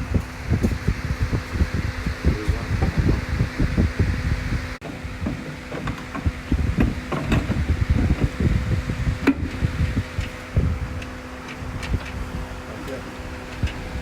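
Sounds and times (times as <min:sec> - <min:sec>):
steady hum: 0:00.0 - 0:14.0
tools and parts clattering: 0:05.2 - 0:08.3.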